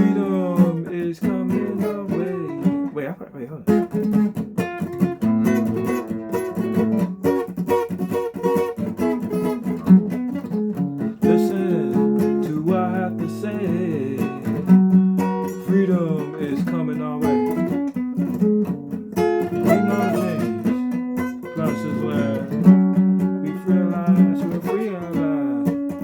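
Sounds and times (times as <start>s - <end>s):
person singing: 0.0s - 3.8s, 11.1s - 14.7s, 15.4s - 17.8s, 19.4s - 26.0s
acoustic guitar strumming: 0.0s - 26.0s.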